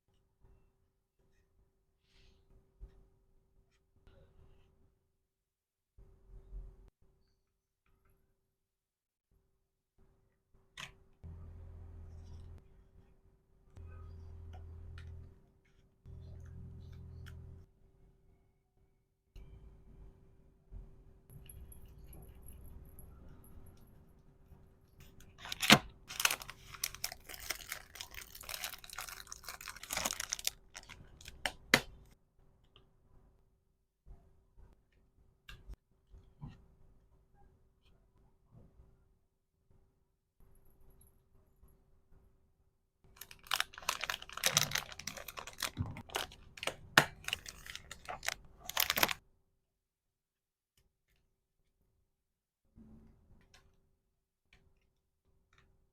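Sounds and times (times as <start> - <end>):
plastic packaging crinkling: 25.4 - 31.5, 43.1 - 49.2.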